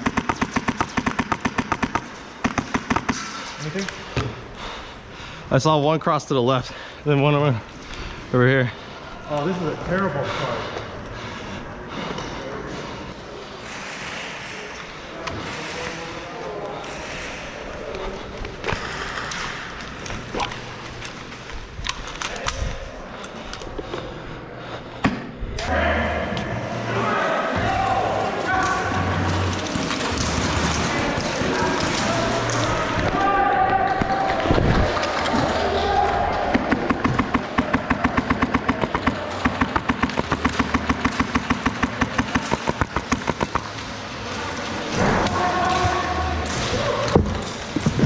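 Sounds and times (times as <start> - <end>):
airsoft gun shots clicking: 0.0 - 3.3, 36.6 - 43.7.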